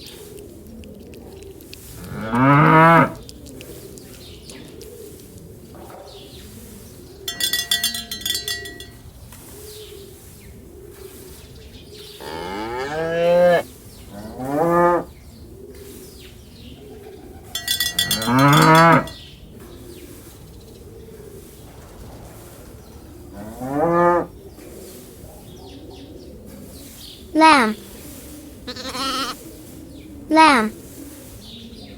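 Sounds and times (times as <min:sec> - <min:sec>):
cattle mooing: 0:02.0 - 0:03.2, 0:12.2 - 0:13.6, 0:14.2 - 0:15.0, 0:17.6 - 0:19.2, 0:28.7 - 0:29.4
cowbell clanking: 0:07.3 - 0:09.0, 0:17.6 - 0:19.2.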